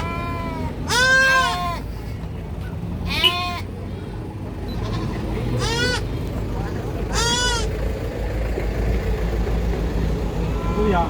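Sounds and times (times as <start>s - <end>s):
baby goat bleating: 0.0s - 1.9s, 3.0s - 3.7s, 4.7s - 6.1s, 7.1s - 7.7s, 10.5s - 11.0s.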